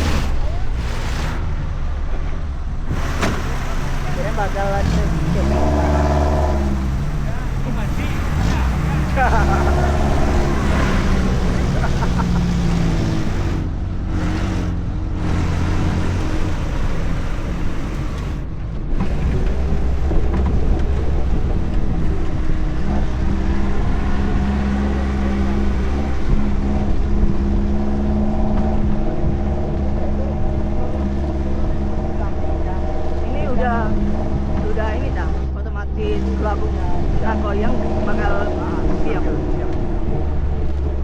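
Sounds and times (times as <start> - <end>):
vehicle engine droning under load: 0.0 - 41.0.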